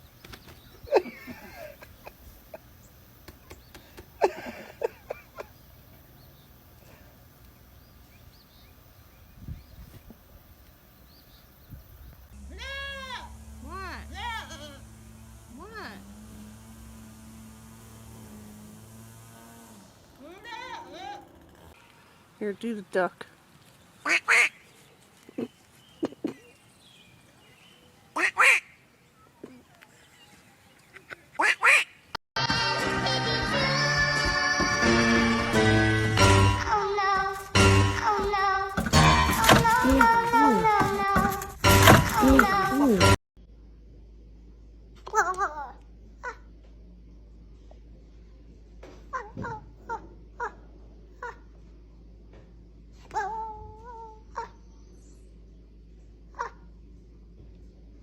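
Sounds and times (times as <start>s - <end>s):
duck quacking: 24.0s - 24.6s, 28.2s - 28.8s, 31.4s - 32.0s.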